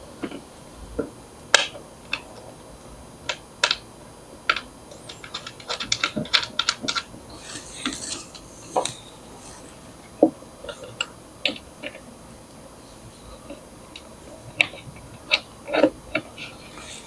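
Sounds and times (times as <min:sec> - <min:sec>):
small metal parts clicking on deck: 0:04.5 - 0:09.7.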